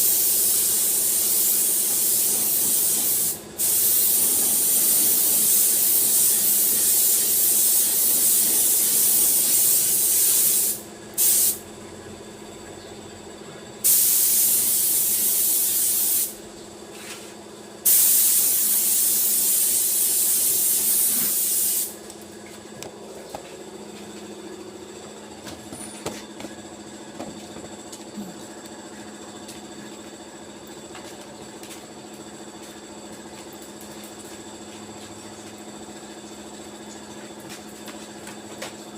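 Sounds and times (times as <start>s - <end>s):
compressed air hissing: 0.0s - 11.6s, 13.8s - 16.4s, 17.8s - 22.0s.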